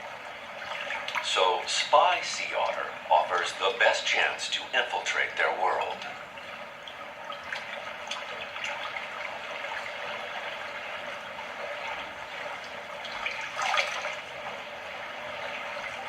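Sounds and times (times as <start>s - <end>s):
sea water lapping: 0.0s - 16.0s
water splash: 11.7s - 14.3s.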